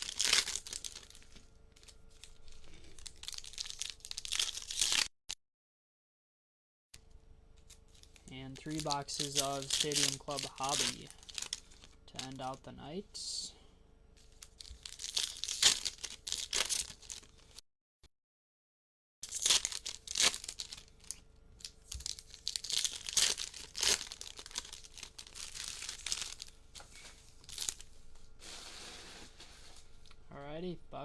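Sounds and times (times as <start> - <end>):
plastic and foil packs tearing: 0.0 - 5.1, 7.9 - 12.6, 14.3 - 17.6, 19.2 - 30.2.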